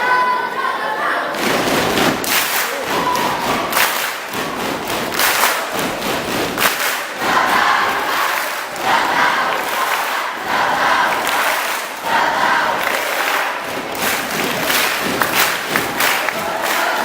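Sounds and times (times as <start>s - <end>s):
young voices shouting and chanting: 0.0s - 1.4s, 2.7s - 3.8s.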